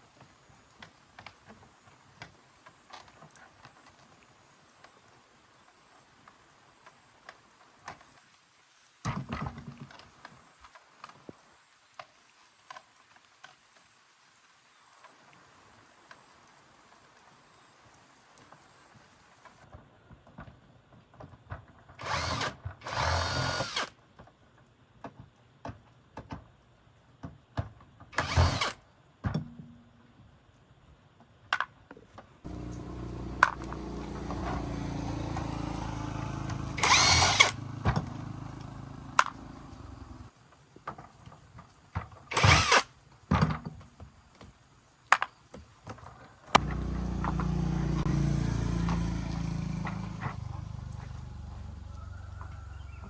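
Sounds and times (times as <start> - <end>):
power tool bursts: 22.0 - 23.9, 28.2 - 28.8, 32.5 - 38.0, 42.3 - 42.9, 46.6 - 49.2
steady low hum: 32.5 - 40.3, 46.6 - 48.8.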